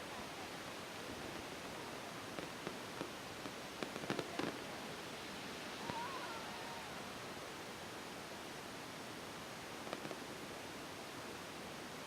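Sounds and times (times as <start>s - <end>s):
background hiss: 0.0s - 12.0s
fireworks popping and cracking: 2.2s - 4.7s, 9.8s - 10.3s.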